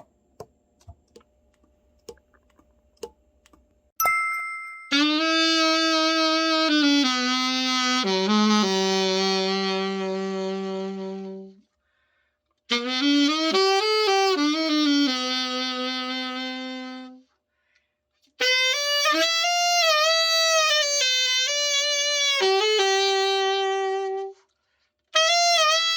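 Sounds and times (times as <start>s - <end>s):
solo saxophone long notes: 4.9s - 11.7s, 12.7s - 17.3s, 18.4s - 24.5s, 25.1s - 25.9s.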